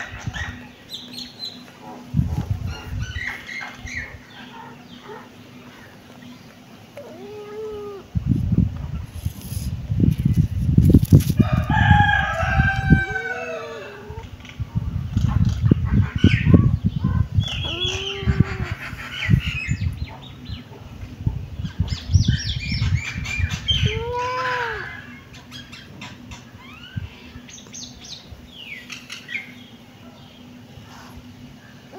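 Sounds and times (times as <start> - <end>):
animal calls and chirps: 0.0 - 8.1, 15.4 - 20.9, 21.6 - 31.9
rustling: 9.0 - 11.4.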